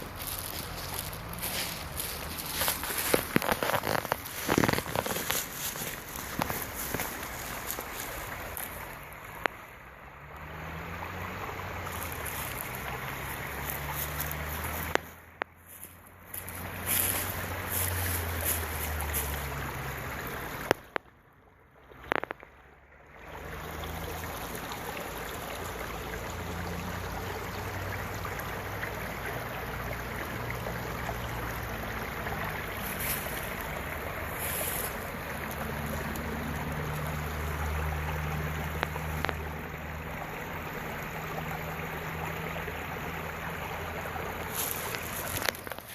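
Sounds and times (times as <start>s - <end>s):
running water rushing: 0.0s - 45.9s.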